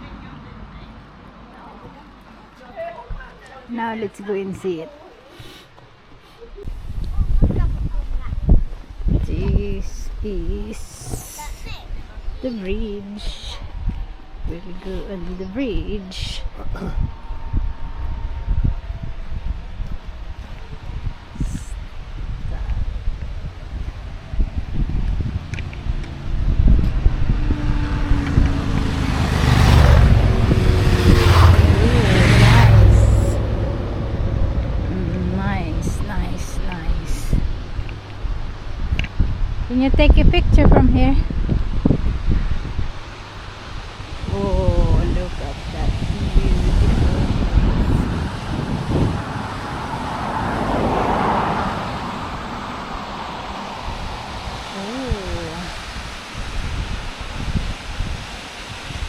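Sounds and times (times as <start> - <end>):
wind buffeting microphone: 6.5 - 59.0
waterfall rushing: 41.7 - 59.0.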